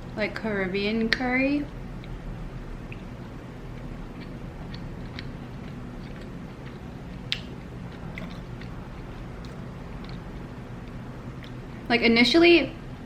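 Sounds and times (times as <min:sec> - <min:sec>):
chewing mouth clicks: 0:03.7 - 0:11.6.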